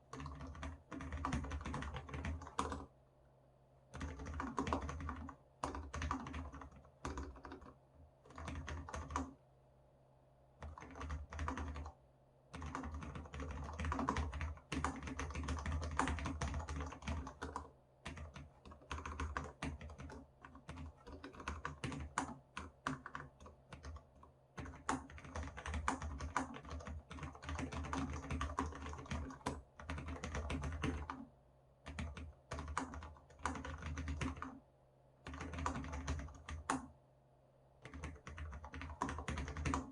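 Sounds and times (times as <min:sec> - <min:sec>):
keyboard typing: 0:00.1 - 0:02.9, 0:03.9 - 0:09.3, 0:10.6 - 0:34.6, 0:35.2 - 0:36.9, 0:37.8 - 0:39.9.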